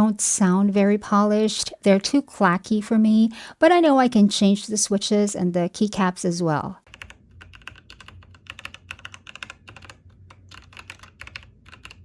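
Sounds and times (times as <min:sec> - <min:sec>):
mechanical keyboard typing: 0:06.9 - 0:12.0.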